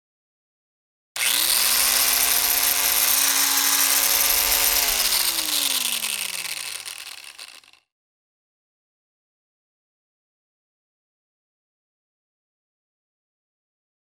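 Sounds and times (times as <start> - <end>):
saw motor whining: 1.2 - 7.8.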